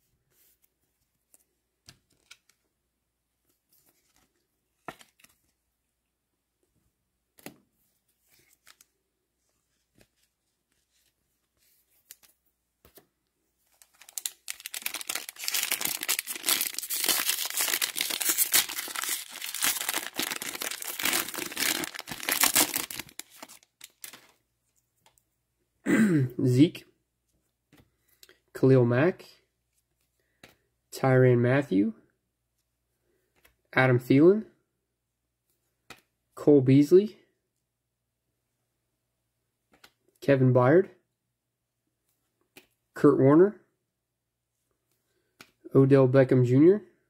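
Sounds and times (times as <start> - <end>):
wrapper tearing and crackling: 13.8 - 24.3.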